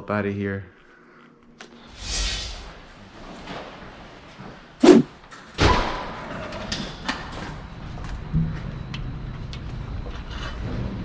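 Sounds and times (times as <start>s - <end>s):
steady low rumble: 1.9s - 3.0s.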